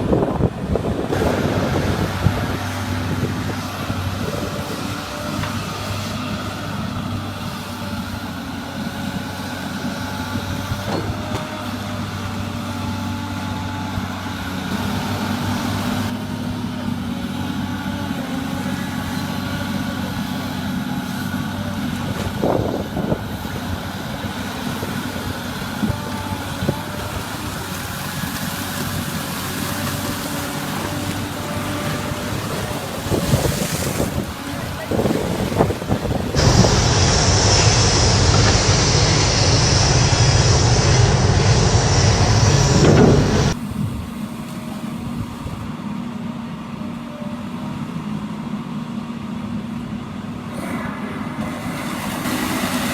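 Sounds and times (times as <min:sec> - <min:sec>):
diesel engine running: 0:36.4 - 0:43.6.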